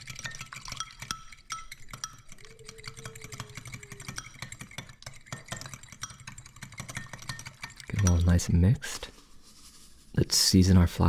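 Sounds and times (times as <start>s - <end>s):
utensil clinking against bowl: 0.0s - 9.3s
bowl ringing: 0.2s - 4.6s.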